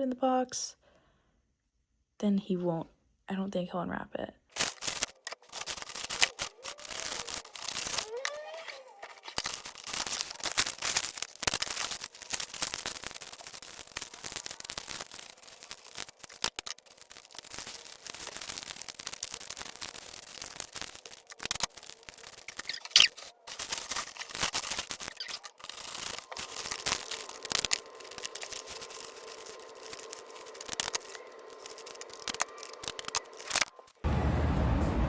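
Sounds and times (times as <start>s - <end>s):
paper crinkling and rustling: 4.5s - 34.0s.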